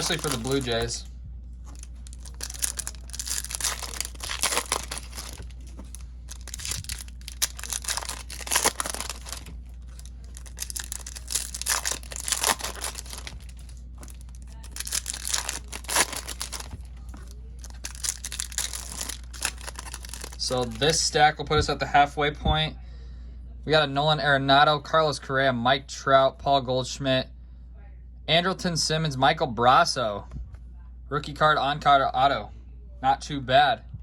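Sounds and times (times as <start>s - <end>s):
foil wrappers tearing and crinkling: 0.0s - 1.0s, 1.7s - 20.9s
low hum: 0.0s - 21.8s.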